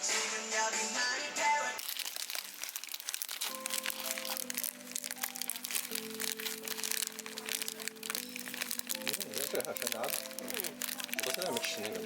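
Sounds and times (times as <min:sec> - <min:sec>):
dense crackling: 0:01.8 - 0:12.0
background music with held notes: 0:03.1 - 0:12.0.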